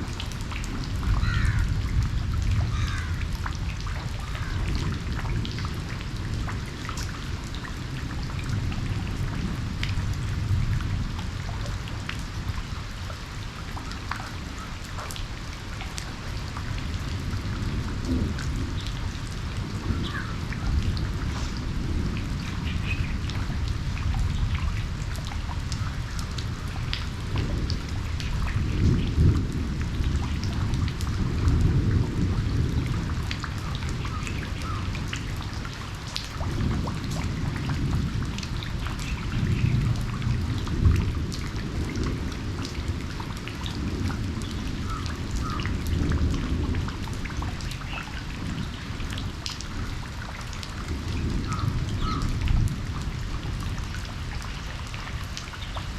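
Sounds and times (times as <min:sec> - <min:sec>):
steady rain: 0:00.0 - 0:55.9
distant thunder rumbling: 0:16.4 - 0:35.6.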